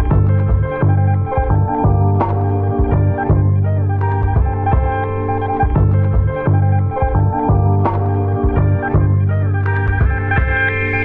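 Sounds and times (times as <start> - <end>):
bass line: 0.0 - 11.0
guitar notes: 0.0 - 11.0
drum hits: 4.2 - 5.0, 5.6 - 9.2, 9.9 - 10.8.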